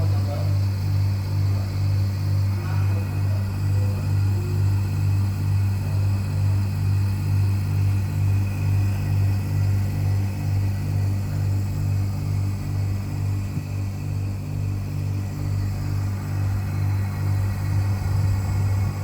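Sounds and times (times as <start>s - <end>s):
air conditioner humming: 0.0s - 19.0s.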